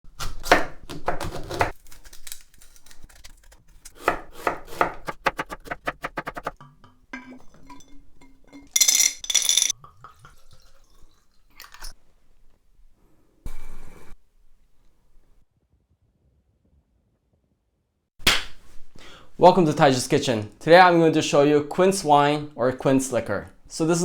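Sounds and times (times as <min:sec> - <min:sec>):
knife chopping on cutting board: 0:00.1 - 0:01.7, 0:04.0 - 0:06.6
dishes clinking: 0:06.6 - 0:09.8.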